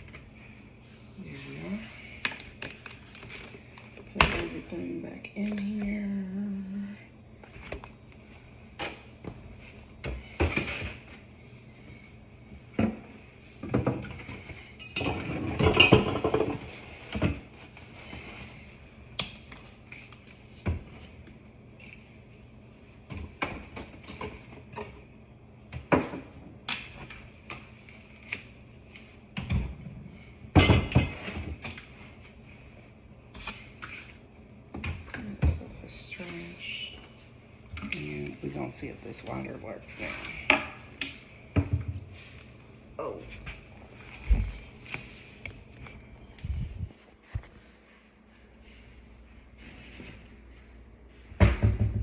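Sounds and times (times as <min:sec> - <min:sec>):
faint high hum: 0:00.0 - 0:51.8.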